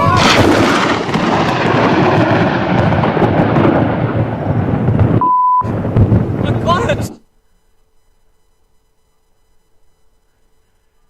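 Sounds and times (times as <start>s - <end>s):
thunder rumble and crackle: 0.0s - 7.2s
short single-pitched beep: 5.2s - 5.7s.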